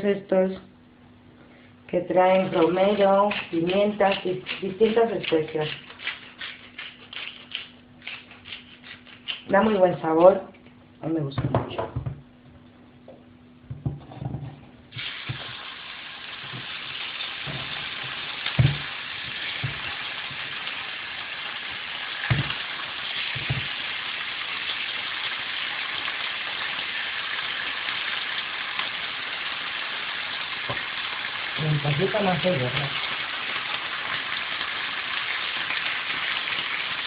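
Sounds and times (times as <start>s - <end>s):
meat sizzling in a frying pan: 14.9s - 37.0s.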